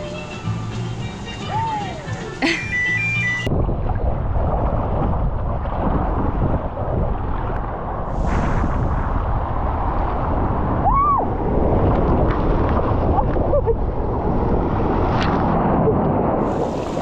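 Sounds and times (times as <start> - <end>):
rushing water: 0.0 - 15.6, 16.4 - 17.0
wind buffeting microphone: 3.4 - 17.0.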